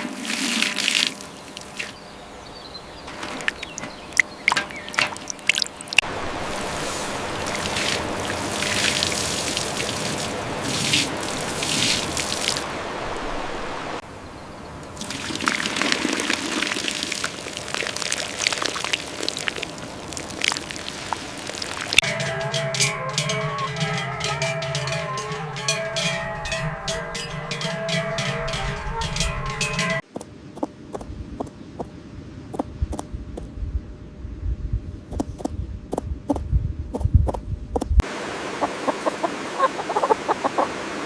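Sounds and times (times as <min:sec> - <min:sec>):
liquid pouring and trickling: 0:04.2 - 0:12.6, 0:15.0 - 0:22.0.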